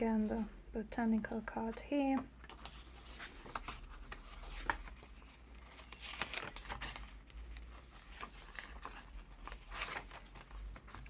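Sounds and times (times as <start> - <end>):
paper pages rustling: 2.1 - 11.0.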